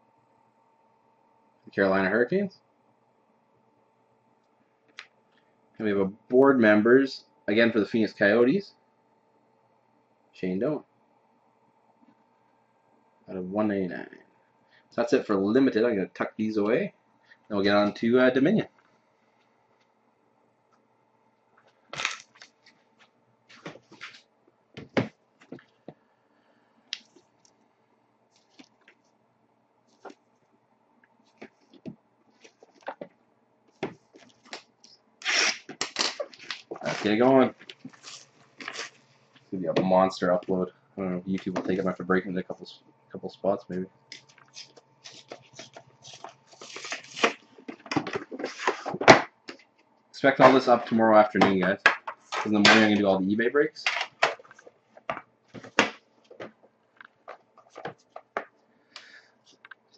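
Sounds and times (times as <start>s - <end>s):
cards and boxes handled on table: 21.6s - 26.0s, 44.1s - 53.0s, 53.9s - 58.6s
card packaging rustling and crinkling: 21.8s - 22.9s, 23.5s - 24.3s, 35.5s - 39.5s, 44.2s - 49.2s.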